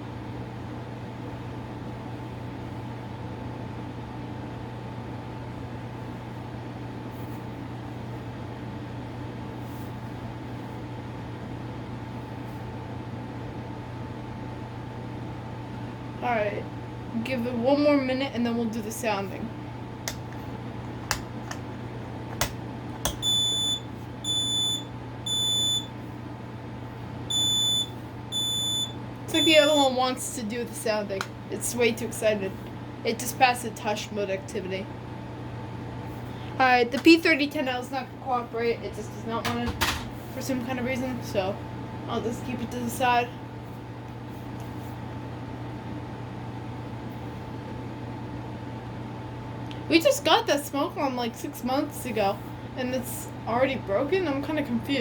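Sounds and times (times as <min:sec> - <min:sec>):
room hum and hiss: 0:00.0 - 0:55.0
smoke alarm beeps: 0:23.1 - 0:25.9, 0:27.3 - 0:29.9.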